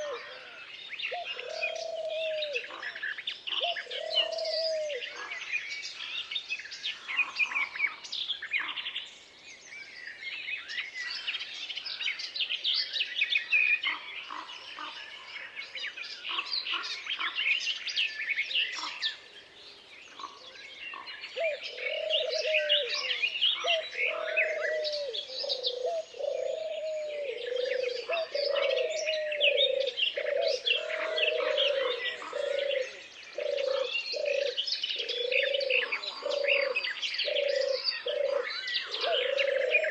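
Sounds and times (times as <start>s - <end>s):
lower repeated bird call: 0.0s - 5.4s, 20.1s - 39.9s
songbirds chirping and singing: 0.0s - 39.9s.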